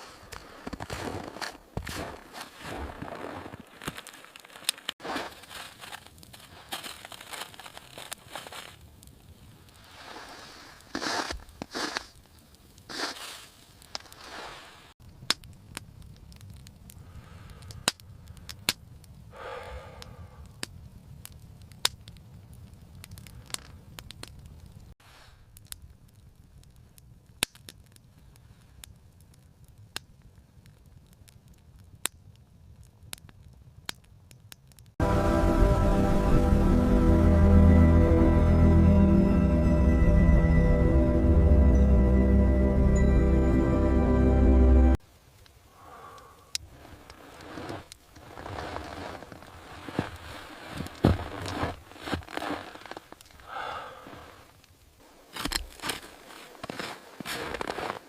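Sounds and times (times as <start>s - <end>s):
rustling and crunching: 0.0s - 16.9s, 46.6s - 58.0s
sharp crackles and pops: 0.0s - 35.0s, 45.0s - 58.0s
loud music: 35.0s - 45.0s
low rumble: 35.0s - 45.0s.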